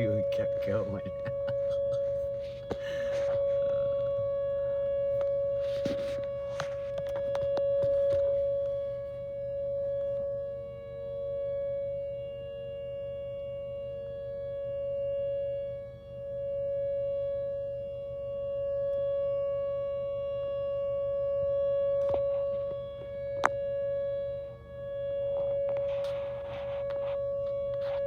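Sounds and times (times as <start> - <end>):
tornado warning siren: 0.0 - 28.0.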